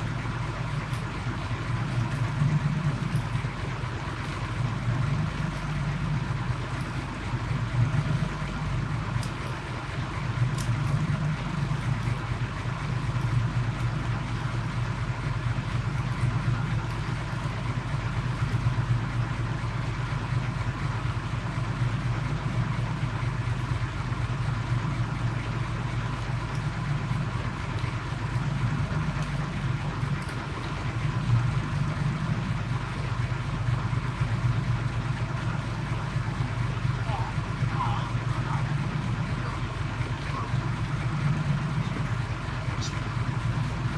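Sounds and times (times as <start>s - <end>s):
small boat engine droning: 0.0s - 43.9s.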